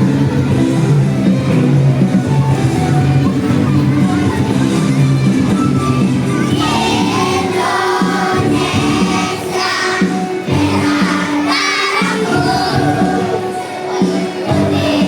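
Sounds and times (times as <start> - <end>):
instrumental accompaniment: 0.0 - 15.0
children's choir singing: 3.5 - 15.0.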